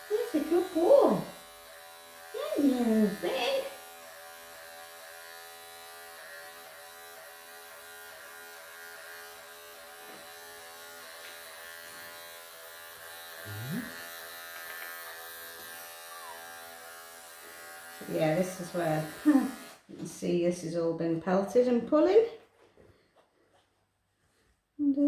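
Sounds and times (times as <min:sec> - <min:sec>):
electric clippers buzzing: 0:00.0 - 0:19.9
short rising voice sound: 0:13.5 - 0:13.9.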